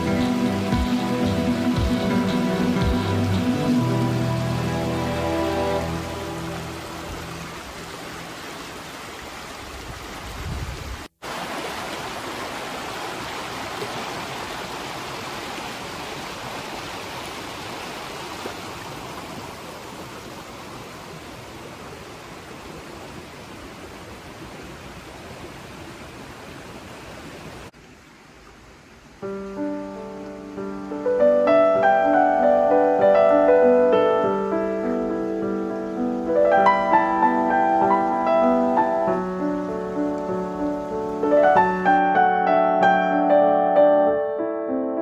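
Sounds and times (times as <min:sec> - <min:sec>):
piano music: 0:00.0 - 0:07.7, 0:29.3 - 0:45.0
rushing stream water: 0:00.0 - 0:43.5.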